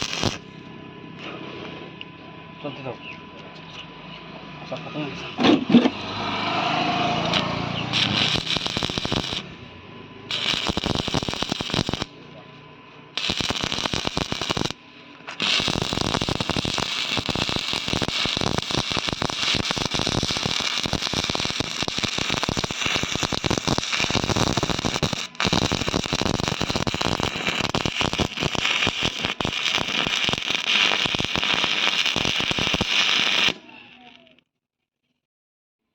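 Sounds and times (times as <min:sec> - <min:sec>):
electric arc welding crackle: 0:00.0 - 0:00.5, 0:06.4 - 0:09.6, 0:10.2 - 0:12.2, 0:13.2 - 0:34.2.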